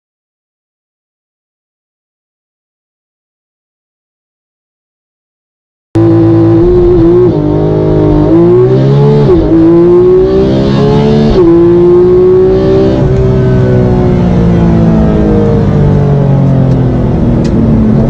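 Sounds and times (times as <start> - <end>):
car engine at high revs: 6.0 - 18.0.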